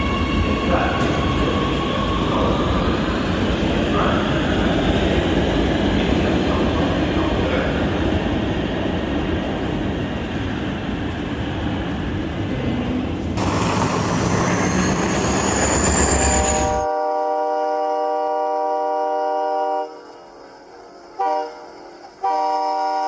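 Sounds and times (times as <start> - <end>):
train rumbling on rails: 0.0 - 23.0
high whine: 13.4 - 16.9
train horn chord: 16.8 - 20.3, 21.2 - 23.0.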